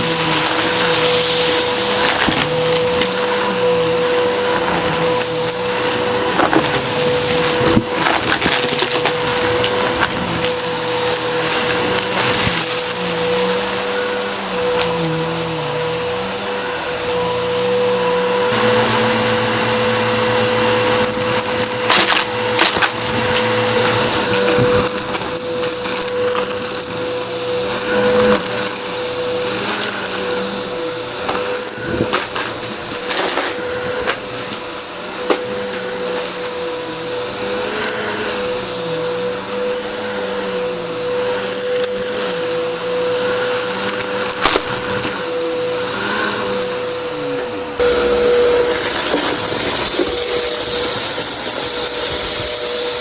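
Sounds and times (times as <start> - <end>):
vacuum cleaner whining: 0.0 - 53.0
dry debris crackling in nozzle: 5.1 - 13.3, 43.9 - 45.3.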